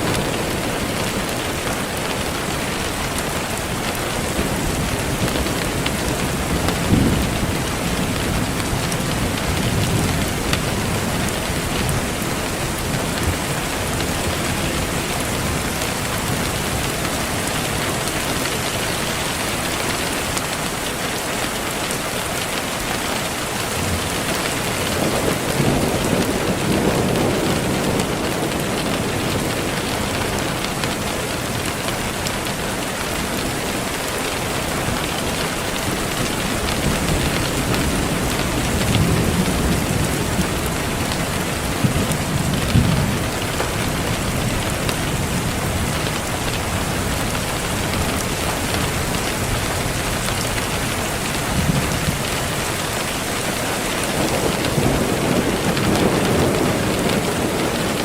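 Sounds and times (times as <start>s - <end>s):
steady rain: 0.0s - 58.0s
distant thunder rumble: 23.7s - 31.9s, 34.1s - 58.0s.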